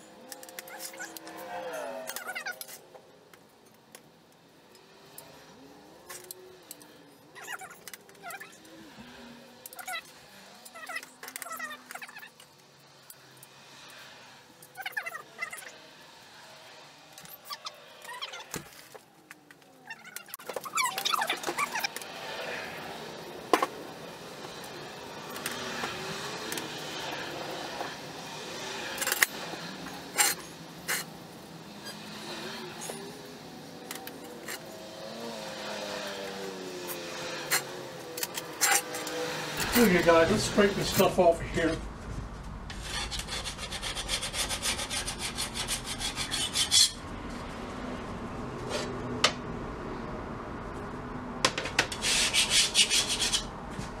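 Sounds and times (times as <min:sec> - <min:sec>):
steady background noise: 0:00.0 - 0:54.0
hand scraper scraping metal: 0:29.0 - 0:31.1, 0:37.0 - 0:41.2, 0:42.7 - 0:47.0, 0:51.8 - 0:53.5.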